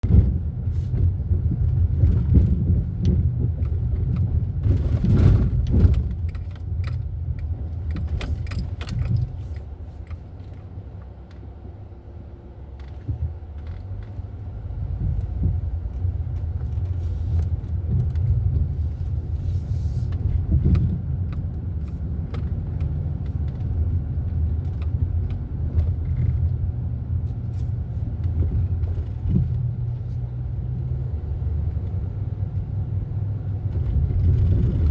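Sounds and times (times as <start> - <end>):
car road and engine rumble: 0.0 - 34.9
clicks and rattles: 1.5 - 11.5, 15.2 - 18.8, 20.1 - 26.6.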